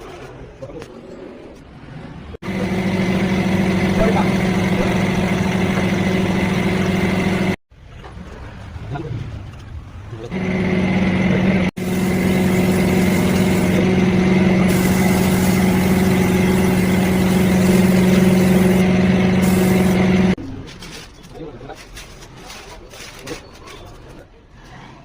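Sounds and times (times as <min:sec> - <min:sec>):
motor running: 0:02.4 - 0:07.6, 0:10.3 - 0:20.4.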